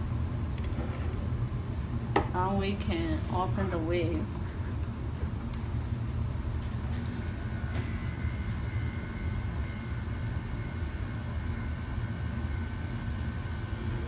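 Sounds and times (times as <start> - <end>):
low steady hum: 0.0 - 14.0
gear-motor whine: 6.1 - 14.0.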